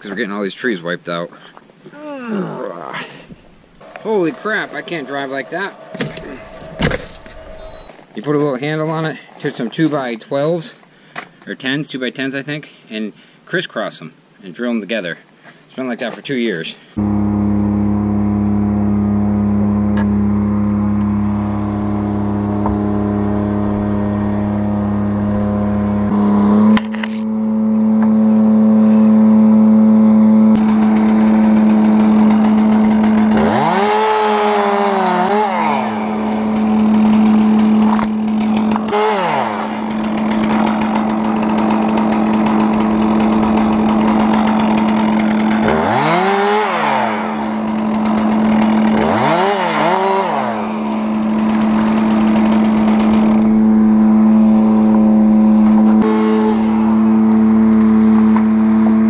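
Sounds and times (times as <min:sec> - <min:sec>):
chainsaw cutting at high throttle: 0:17.0 - 0:59.0.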